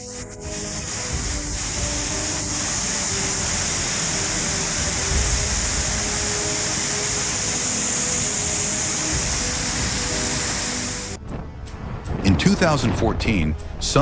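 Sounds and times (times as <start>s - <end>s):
faint background music: 0.0s - 14.0s
rushing floodwater: 0.6s - 11.2s.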